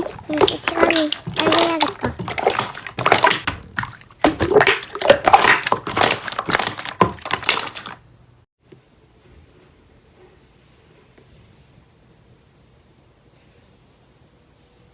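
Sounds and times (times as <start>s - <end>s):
slime squeezed crackling and popping: 0.0s - 8.0s.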